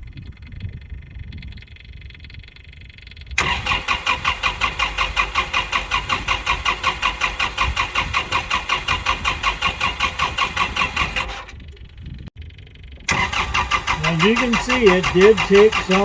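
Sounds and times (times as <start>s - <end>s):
tractor engine cranking on starter: 3.2s - 16.0s.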